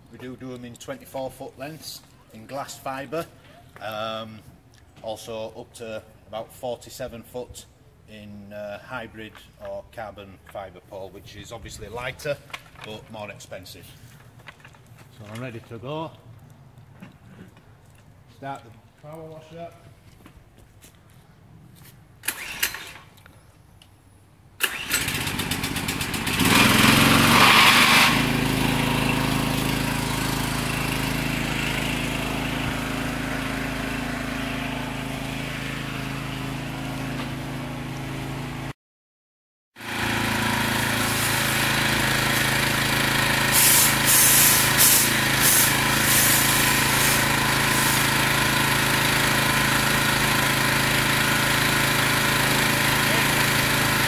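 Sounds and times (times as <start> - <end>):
pressure washer engine running: 24.6 - 38.7, 39.8 - 54.0
spray lance hissing: 43.5 - 48.1.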